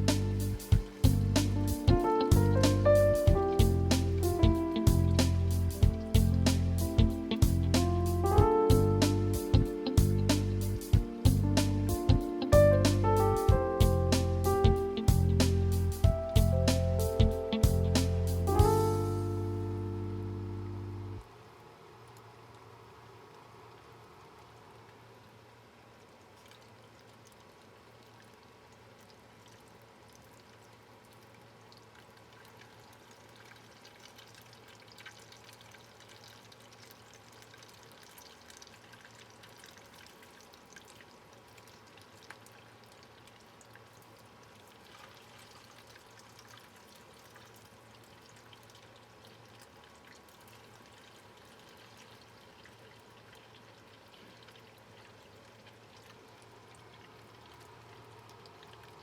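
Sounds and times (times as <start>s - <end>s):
low steady hum: 0.0s - 27.1s.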